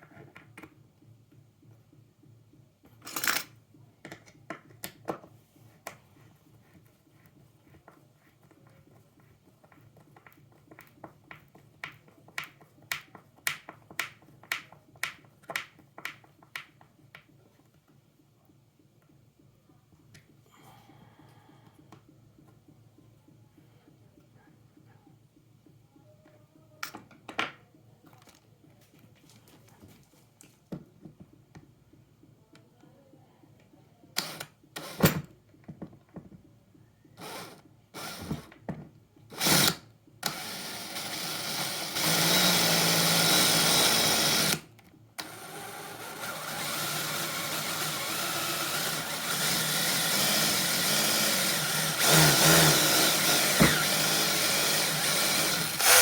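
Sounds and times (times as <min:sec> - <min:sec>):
cordless drill motor running: 0:34.2 - 0:35.0, 0:37.2 - 0:38.5, 0:39.3 - 0:44.6, 0:45.2 - 0:56.0.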